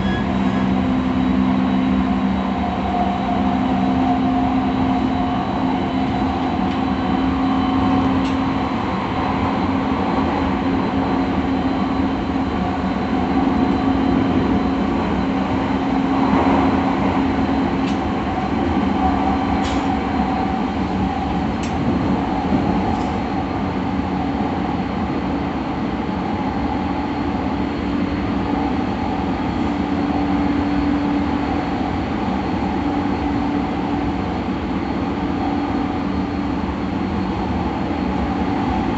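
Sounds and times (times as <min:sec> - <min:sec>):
train motor hum: 0:00.0 - 0:24.0
train rolling noise: 0:00.0 - 0:38.9.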